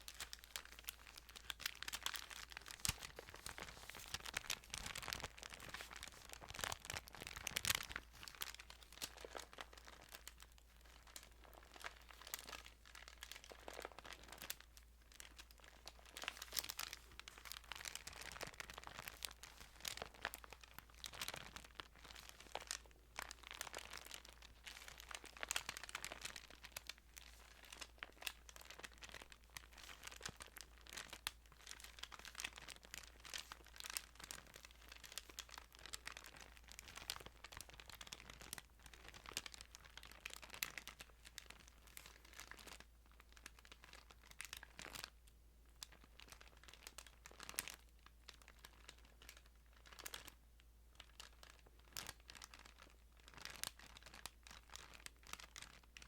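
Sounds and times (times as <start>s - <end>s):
paper pages crinkling and rustling: 0.0s - 41.0s.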